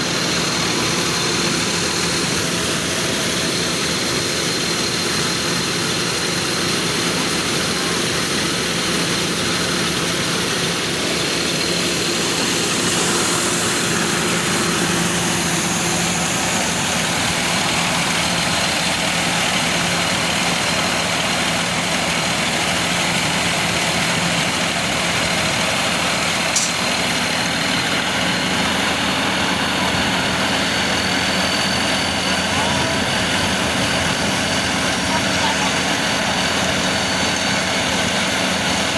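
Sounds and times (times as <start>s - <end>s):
combine harvester running: 0.0s - 38.9s
high machine whine: 0.0s - 38.9s
short click: 26.6s - 26.9s.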